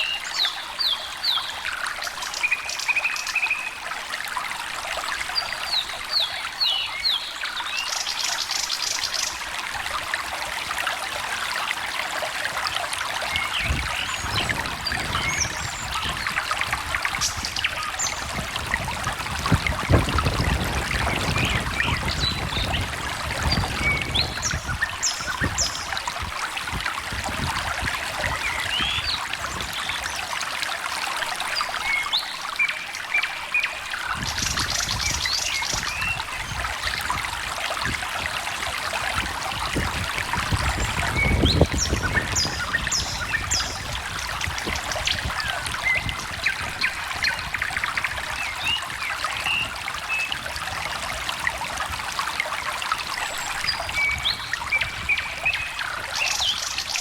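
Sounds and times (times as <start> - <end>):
stream trickling and splashing: 0.0 - 57.0
songbirds chirping and trilling: 39.6 - 50.4.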